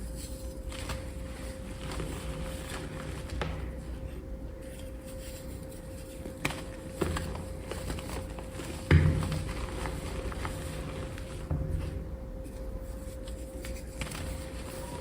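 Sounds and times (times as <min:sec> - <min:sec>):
faint steady hum: 0:00.0 - 0:15.0
dull thuds: 0:06.4 - 0:12.6.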